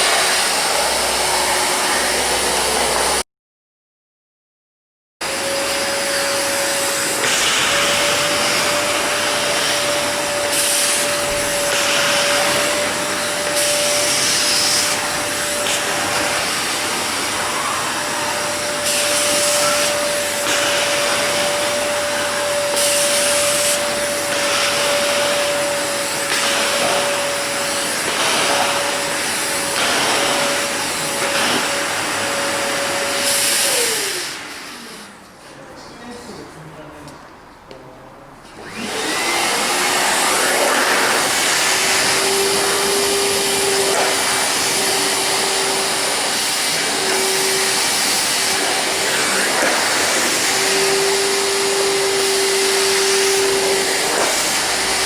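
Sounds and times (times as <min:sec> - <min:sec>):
wet dry vacuum cleaner motor whine: 0:00.0 - 0:03.2, 0:05.2 - 0:35.4, 0:38.6 - 0:55.0.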